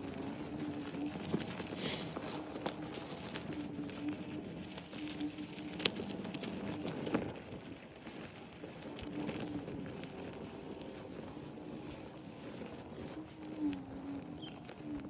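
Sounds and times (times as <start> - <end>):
birds calling low: 11.7 - 15.0.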